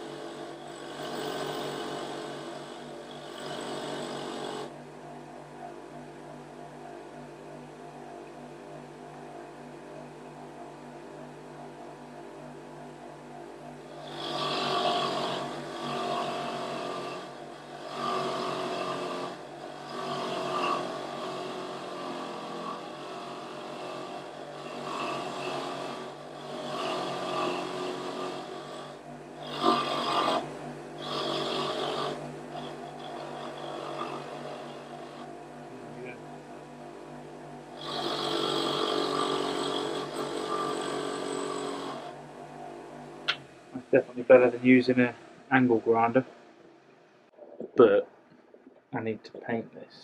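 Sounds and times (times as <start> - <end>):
electric grinder running: 0.0 - 4.7, 13.9 - 35.3, 37.8 - 42.2
rough grinding of metal: 0.0 - 4.7, 13.9 - 35.3, 37.8 - 42.2.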